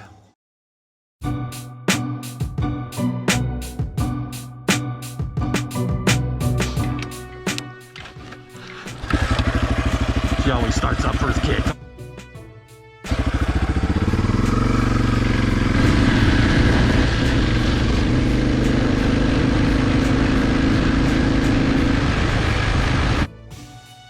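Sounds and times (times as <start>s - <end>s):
motorcycle engine idling: 8.7s - 11.8s, 13.1s - 23.3s.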